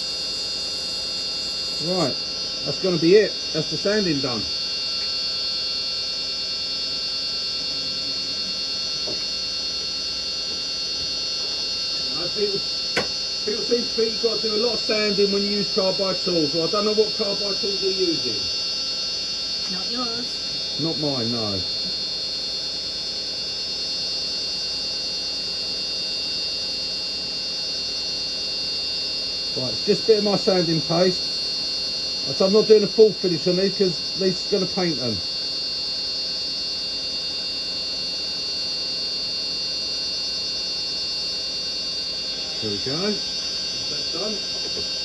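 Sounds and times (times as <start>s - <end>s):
wood lathe motor humming: 0.0s - 23.8s, 29.5s - 35.3s, 42.2s - 45.0s.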